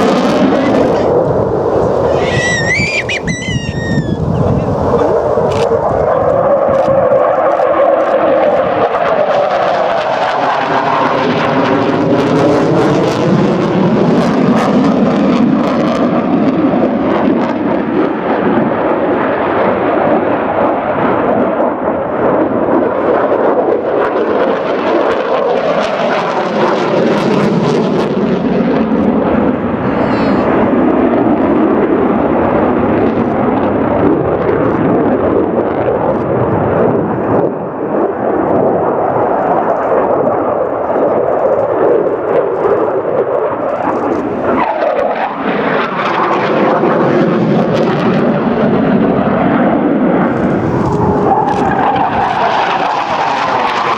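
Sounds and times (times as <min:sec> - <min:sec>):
jet engines roaring: 0:00.0 - 0:16.2, 0:26.4 - 0:41.2, 0:41.9 - 0:53.9.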